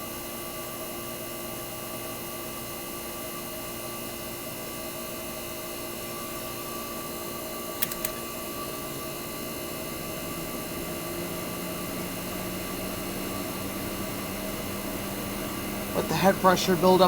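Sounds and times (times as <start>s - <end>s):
air conditioner compressor humming: 0.0s - 17.0s
sharp clicks: 7.8s - 8.2s.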